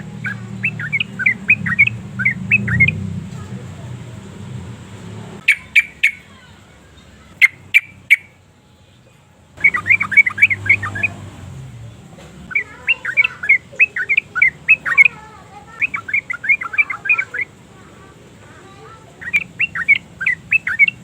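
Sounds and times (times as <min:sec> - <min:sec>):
bird sharp call notes: 0:00.0 - 0:03.1, 0:05.4 - 0:06.5, 0:07.4 - 0:08.4, 0:09.6 - 0:11.3, 0:12.5 - 0:17.6, 0:18.8 - 0:21.0
bird bubbly chattering song: 0:00.0 - 0:03.2, 0:05.4 - 0:06.5, 0:07.3 - 0:08.4, 0:09.6 - 0:11.5, 0:12.4 - 0:18.0, 0:18.7 - 0:21.0.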